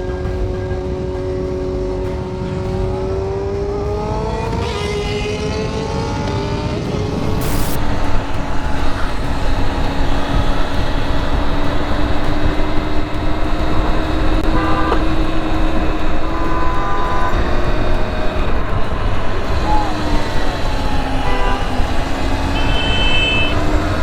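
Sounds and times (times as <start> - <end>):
vehicle horn: 0.0 - 6.3, 11.1 - 24.0
motorcycle engine drone: 0.0 - 24.0
wind rush on microphone: 0.0 - 24.0.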